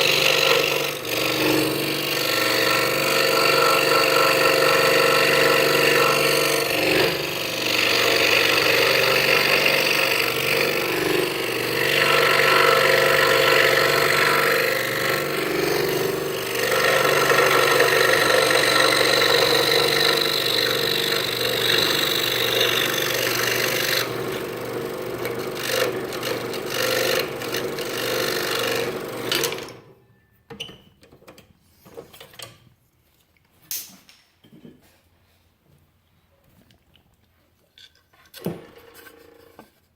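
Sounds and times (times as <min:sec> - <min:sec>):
scroll saw cutting wood: 0:00.0 - 0:29.8.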